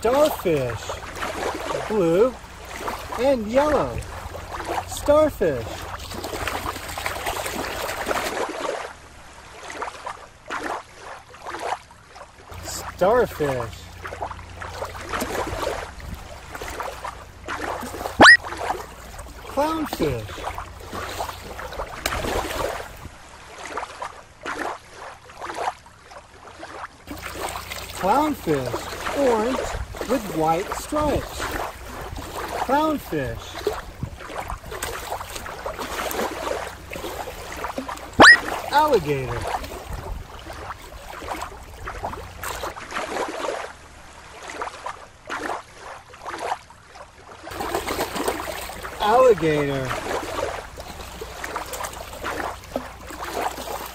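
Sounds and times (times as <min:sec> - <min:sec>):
small waves splashing at shore: 0:00.0 - 0:53.9.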